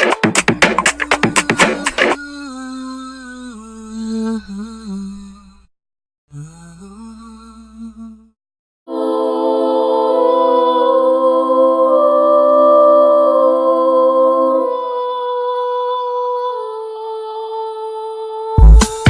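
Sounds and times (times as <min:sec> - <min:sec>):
loud electronic dance beat: 0:00.0 - 0:02.2, 0:18.7 - 0:19.0.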